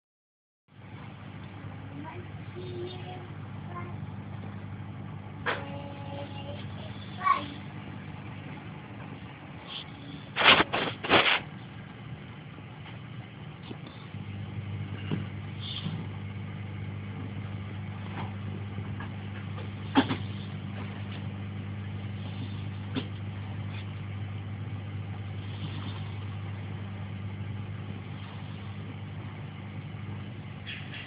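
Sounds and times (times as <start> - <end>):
low rumbling snoring: 5.4 - 8.7, 13.2 - 31.0.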